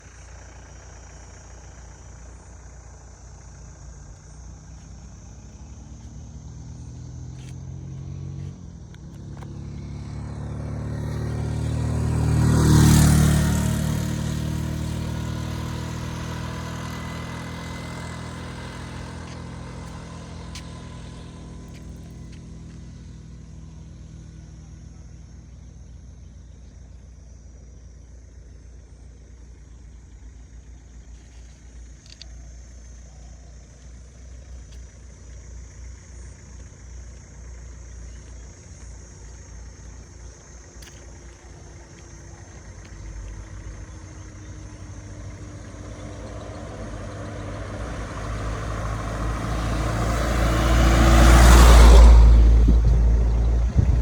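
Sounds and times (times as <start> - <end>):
vehicle passing by: 5.2 - 24.4, 39.5 - 54.0.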